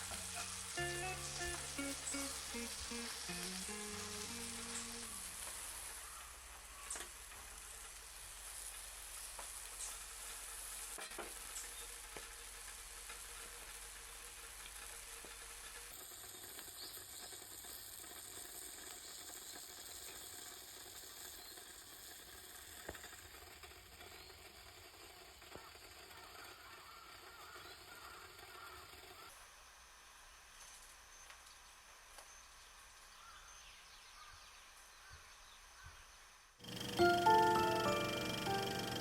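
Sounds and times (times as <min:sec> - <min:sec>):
water boiling and bubbling: 0:00.2 - 0:25.8.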